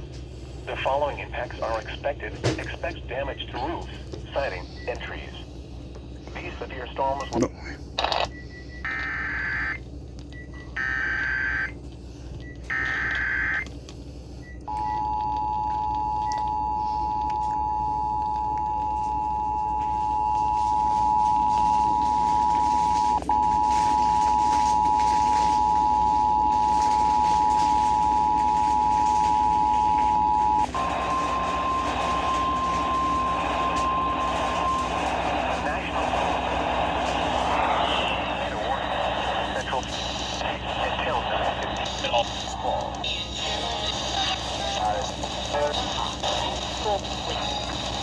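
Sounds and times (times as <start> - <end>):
radio static hiss: 0.3 - 9.8, 19.8 - 48.0
steady warning alarm tone: 8.3 - 40.5
harsh buzzy alert bursts: 10.8 - 11.8.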